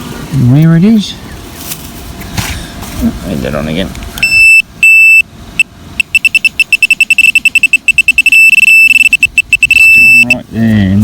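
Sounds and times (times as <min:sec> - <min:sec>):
metal detector pinpointer beeping: 0:04.2 - 0:10.4.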